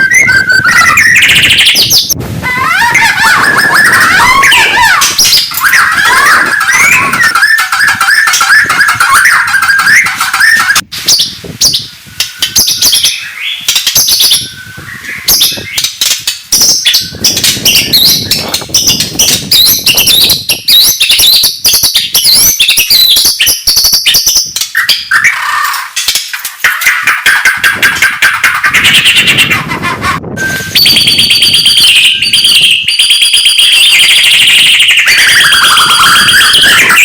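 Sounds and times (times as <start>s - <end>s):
songbird singing: 0.0s - 2.2s, 2.8s - 25.7s.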